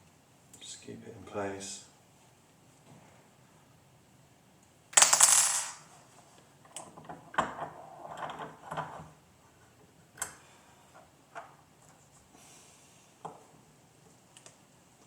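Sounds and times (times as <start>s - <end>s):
metal part clattering on surface: 5.0s - 5.8s
small parts clicking and knocking: 5.0s - 5.9s.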